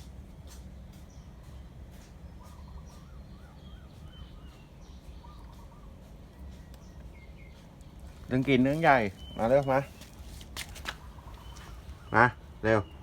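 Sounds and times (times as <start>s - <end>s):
steady low hum: 0.0s - 13.0s
thin high bird chirps: 2.3s - 12.2s.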